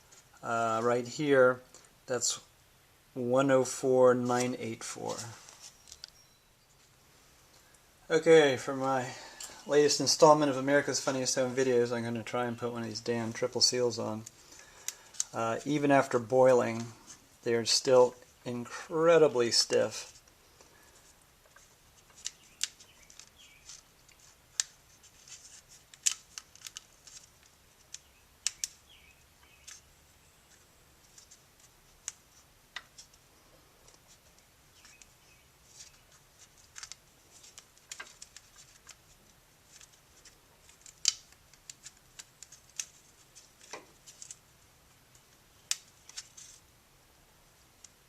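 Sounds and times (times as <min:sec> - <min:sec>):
fingers stretching plastic seal: 0:22.0 - 0:28.8, 0:39.7 - 0:44.4.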